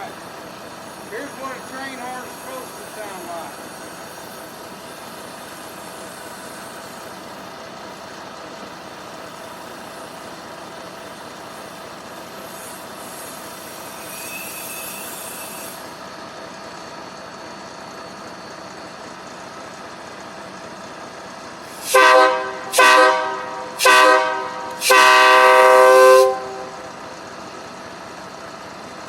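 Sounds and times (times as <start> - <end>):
truck engine idling: 0.0 - 14.0, 15.2 - 29.0
compressed air hiss: 1.3 - 7.2, 12.4 - 16.0, 21.7 - 27.1.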